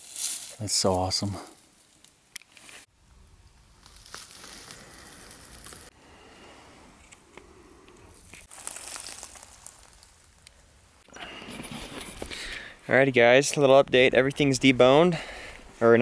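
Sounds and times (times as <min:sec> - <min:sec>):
rustling and crinkling: 0:01.8 - 0:05.9, 0:08.0 - 0:12.7.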